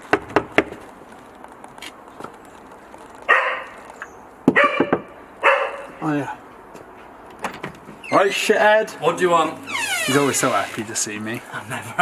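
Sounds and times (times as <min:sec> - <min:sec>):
dog barking: 0:03.3 - 0:03.8, 0:04.6 - 0:06.0.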